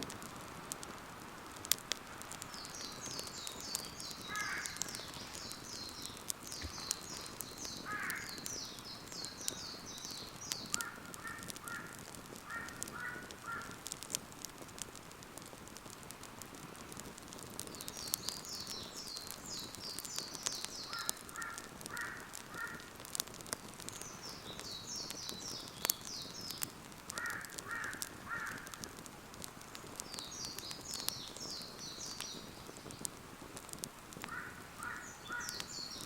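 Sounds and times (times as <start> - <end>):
wood fire crackling: 0.0 - 36.0
birds singing: 2.4 - 13.8, 17.6 - 28.8, 30.0 - 33.1, 34.3 - 36.0.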